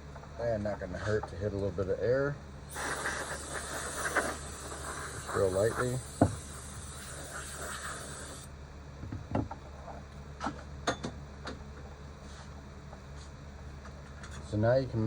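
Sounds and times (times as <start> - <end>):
compressed air hissing: 2.7 - 8.5.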